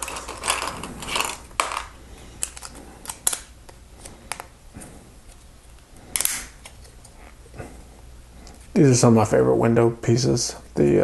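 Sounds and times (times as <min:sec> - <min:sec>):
plastic bricks clicking and clattering: 0:00.0 - 0:03.5.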